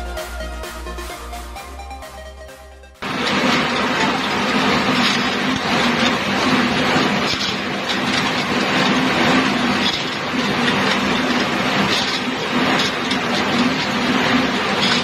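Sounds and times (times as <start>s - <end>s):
machinery low hum: 0.0s - 15.0s
machinery clattering: 3.0s - 15.0s.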